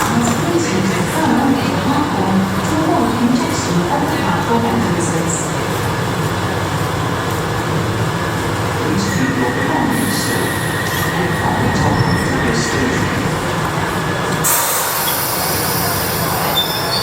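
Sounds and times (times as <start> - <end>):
train rumbling: 0.0 - 17.0
high wheel squeal: 9.2 - 17.0.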